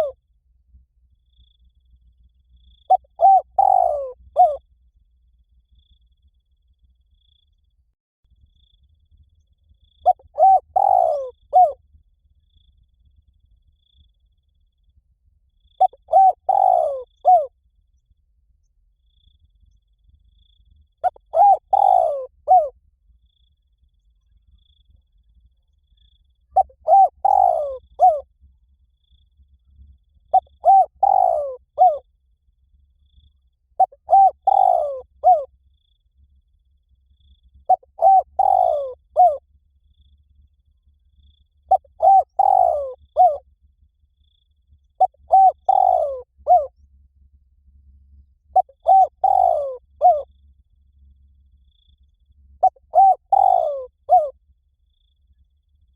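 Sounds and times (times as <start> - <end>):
dove cooing: 2.9 - 4.6, 10.0 - 11.8, 15.8 - 17.5, 21.0 - 22.7, 26.6 - 28.3, 30.3 - 32.1, 33.8 - 35.5, 37.7 - 39.4, 41.7 - 43.4, 45.0 - 46.7, 48.6 - 50.3, 52.6 - 54.4.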